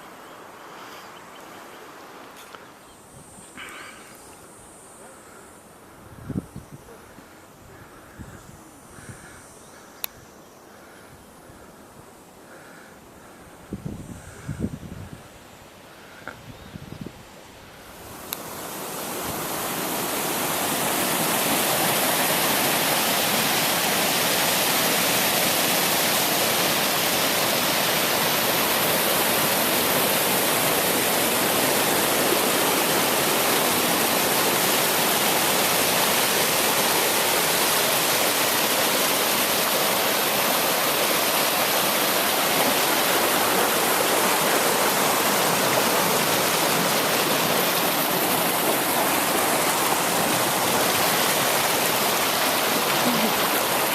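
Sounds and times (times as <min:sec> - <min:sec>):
river water rushing over falls: 0:17.6 - 0:53.9.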